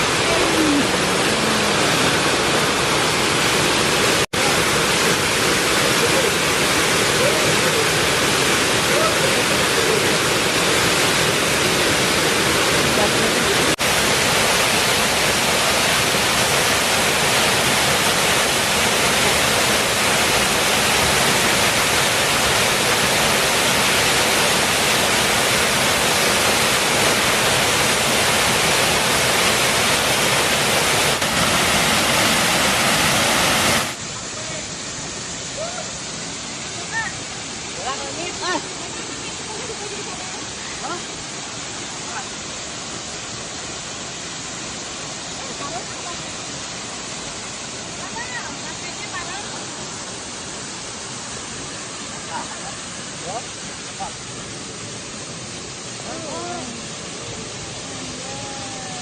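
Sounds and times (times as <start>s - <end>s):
waterfall rushing: 0.0s - 59.0s
faint voices: 0.1s - 2.0s, 56.0s - 59.0s.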